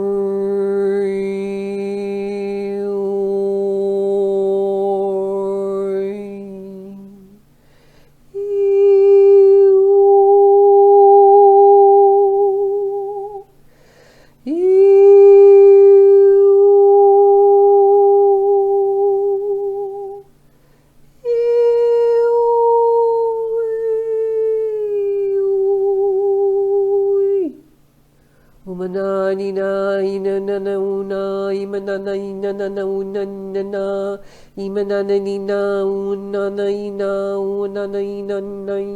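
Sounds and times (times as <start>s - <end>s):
woman toning long held notes: 8.3s - 13.5s, 14.4s - 20.3s, 21.2s - 27.6s.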